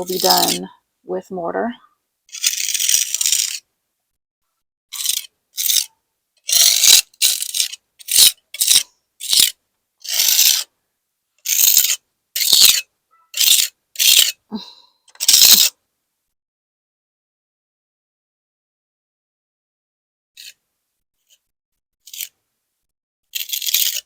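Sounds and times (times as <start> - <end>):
hand tool scraping cement: 0.0 - 0.7, 2.3 - 3.6, 4.9 - 10.7, 11.4 - 14.4, 15.1 - 15.7, 22.0 - 22.4, 23.3 - 24.0.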